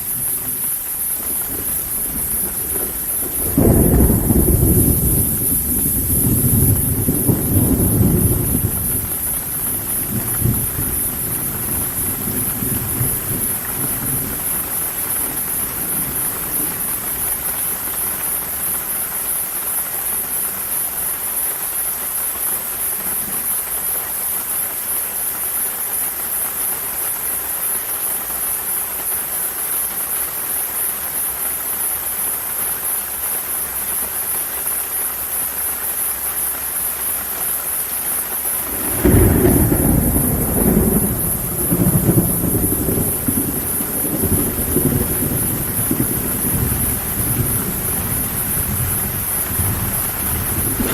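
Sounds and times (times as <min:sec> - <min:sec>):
low thunder rumble: 0:00.0 - 0:19.5, 0:38.1 - 0:50.9
steady rain falling: 0:00.0 - 0:50.9.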